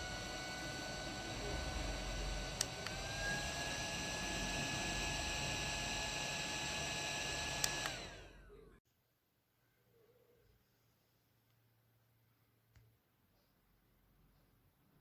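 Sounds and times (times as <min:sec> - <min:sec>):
small fan whirring: 0:00.0 - 0:08.8.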